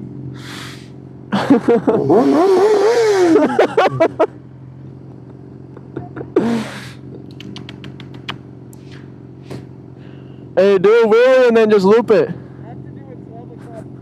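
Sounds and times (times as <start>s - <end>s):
motorcycle engine idling: 0.0s - 2.0s, 3.4s - 11.4s, 12.0s - 14.0s
sharp pops: 6.4s - 9.7s
quick clicks: 7.2s - 9.6s.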